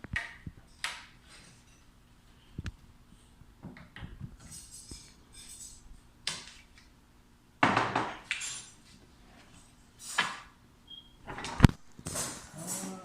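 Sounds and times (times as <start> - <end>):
objects clattering: 11.3 - 13.0.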